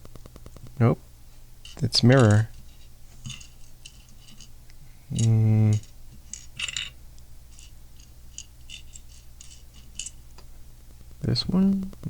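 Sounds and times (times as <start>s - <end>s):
plastic pieces clicking and rattling: 3.2s - 4.5s, 5.1s - 10.2s
person humming: 5.1s - 5.8s.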